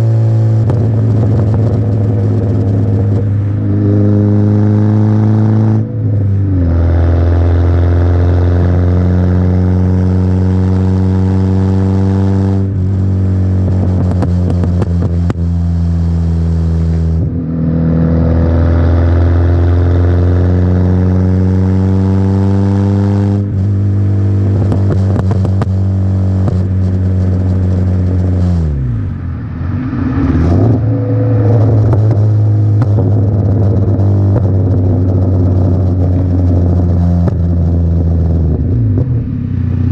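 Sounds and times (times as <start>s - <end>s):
car engine revving: 0.0s - 39.9s
exhaust crackling pops: 0.5s - 3.7s, 12.5s - 16.2s, 23.4s - 29.2s, 30.7s - 39.2s.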